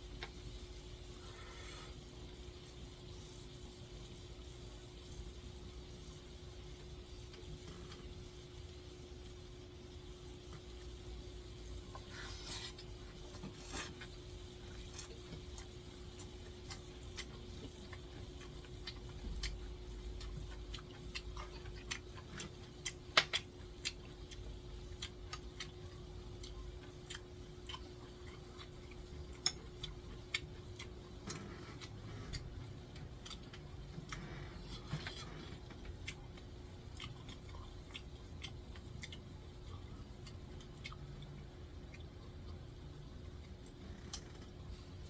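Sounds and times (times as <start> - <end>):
faint steady hum: 0.0 - 45.0.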